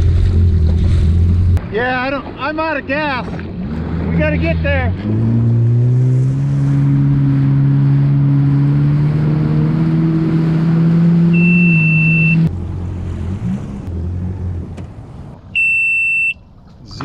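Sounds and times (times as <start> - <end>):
jet ski engine running: 0.0 - 16.3
high beep: 11.3 - 12.5, 15.6 - 16.5.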